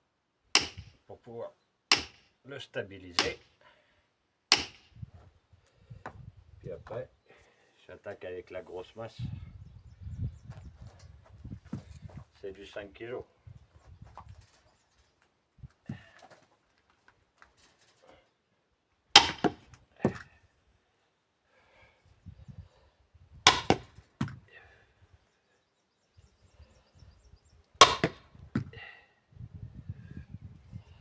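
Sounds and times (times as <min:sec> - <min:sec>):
sledgehammer striking steel wedge: 0:00.6 - 0:00.9, 0:01.9 - 0:02.2, 0:03.2 - 0:03.4, 0:04.5 - 0:04.9, 0:19.2 - 0:20.2, 0:23.5 - 0:24.4, 0:27.8 - 0:28.7.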